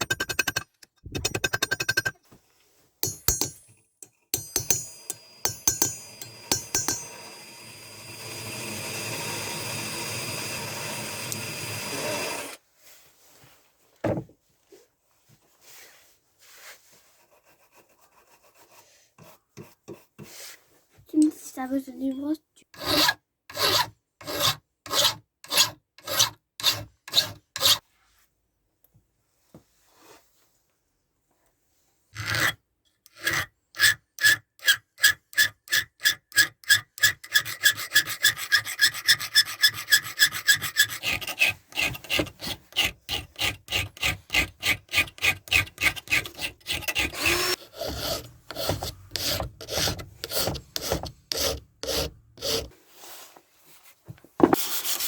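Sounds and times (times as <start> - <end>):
rasp filing wood: 4.4 - 12.6, 22.8 - 27.8, 34.6 - 52.8.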